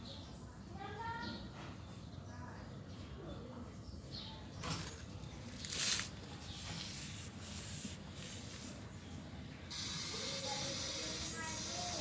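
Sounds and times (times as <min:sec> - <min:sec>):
spray can hissing: 0:05.7 - 0:08.8, 0:09.7 - 0:12.0.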